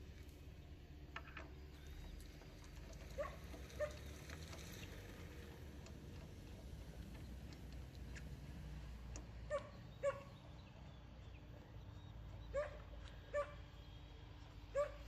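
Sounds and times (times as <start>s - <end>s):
distant dog barking: 3.1s - 4.1s, 9.4s - 10.6s, 12.4s - 13.8s, 14.7s - 15.0s.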